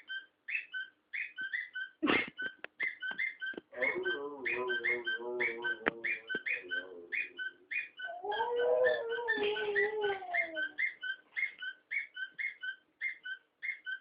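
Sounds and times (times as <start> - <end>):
dog whining howl: 8.0 - 11.0.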